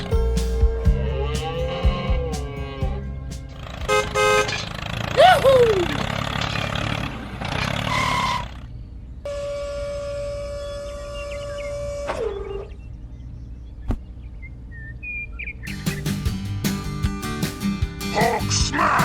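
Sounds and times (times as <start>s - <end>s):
low rumble: 0.0s - 4.3s
steady horn-like tone: 0.0s - 4.8s, 9.3s - 12.8s
double horn-like beep: 9.3s - 12.8s.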